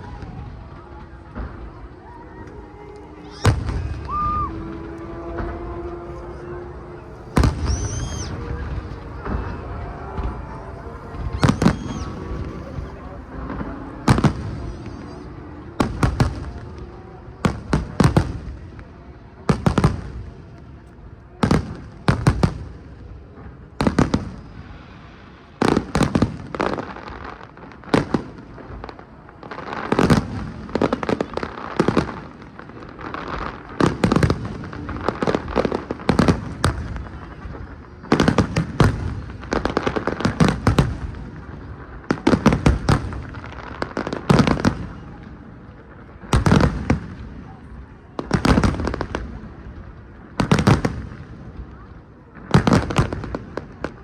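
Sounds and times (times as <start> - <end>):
fireworks shells bursting: 2.5 - 16.8.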